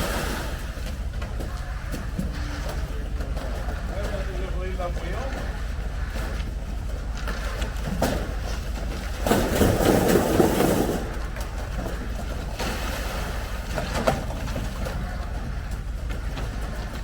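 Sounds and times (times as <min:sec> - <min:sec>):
truck engine running: 0:00.0 - 0:17.0.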